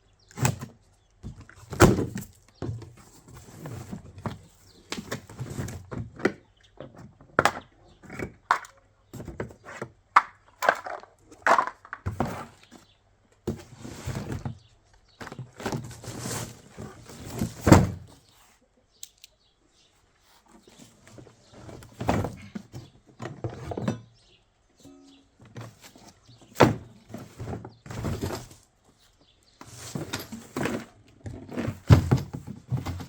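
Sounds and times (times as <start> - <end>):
box and parts knocking and thudding: 0.4 - 6.4, 7.4 - 12.8, 13.5 - 18.2, 21.0 - 24.1, 25.4 - 28.6, 29.6 - 33.0
scraping rustles: 1.3 - 6.1, 12.1 - 18.6, 19.9 - 24.3, 25.4 - 33.0.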